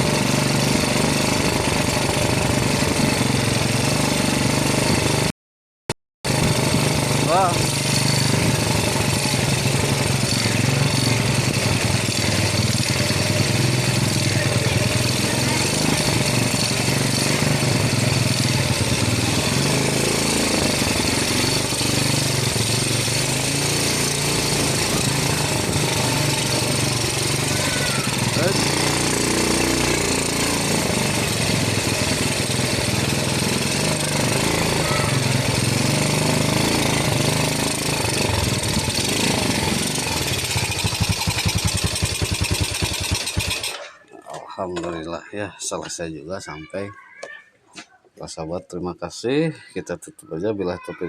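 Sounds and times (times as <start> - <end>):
engine running with fast pulsing: 0.0 - 5.3, 6.3 - 44.0.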